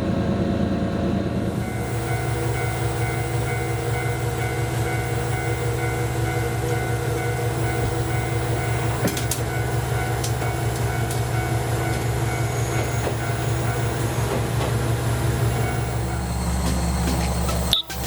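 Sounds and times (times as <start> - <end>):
train running: 0.0 - 18.0
wheel clicks on track: 7.8 - 18.0.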